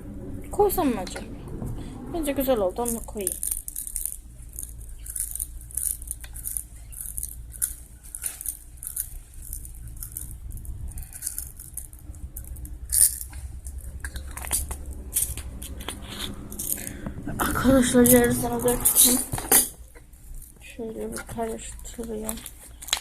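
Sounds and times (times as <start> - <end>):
beads clicking and pattering: 2.8 - 16.9.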